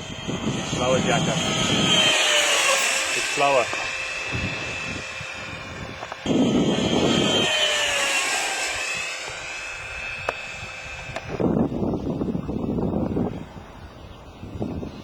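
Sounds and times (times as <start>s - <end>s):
rushing noise: 0.0s - 11.7s
model jet high whine: 0.0s - 15.0s.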